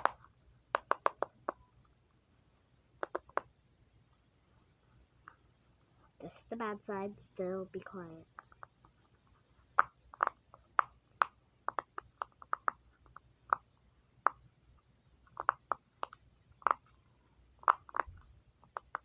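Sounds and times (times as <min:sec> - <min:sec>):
fidget toy bubbles popping: 0:00.0 - 0:01.6, 0:03.0 - 0:03.5, 0:09.7 - 0:14.4, 0:15.3 - 0:16.9, 0:17.6 - 0:19.0.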